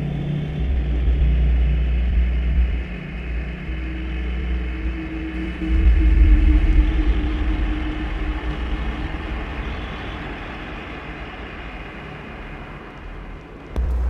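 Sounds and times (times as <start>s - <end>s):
noisy industrial drone: 0.0s - 14.0s
loud low drone: 13.8s - 14.0s.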